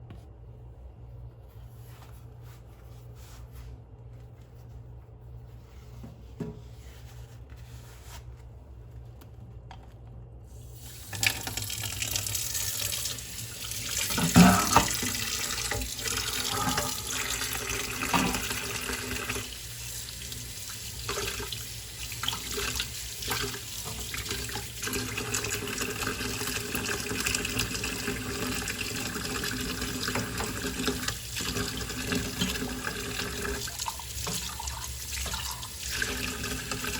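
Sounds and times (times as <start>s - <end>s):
tap water running into sink: 10.8s - 36.9s
dishes clinking: 14.2s - 15.0s.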